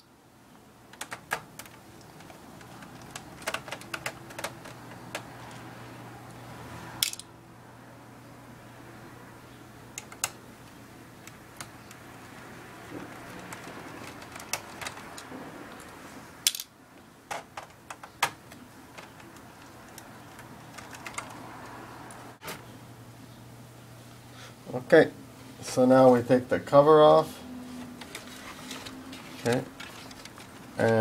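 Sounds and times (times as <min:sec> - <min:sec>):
small plastic and metal parts clicking: 0:07.0 - 0:07.3, 0:16.4 - 0:16.7.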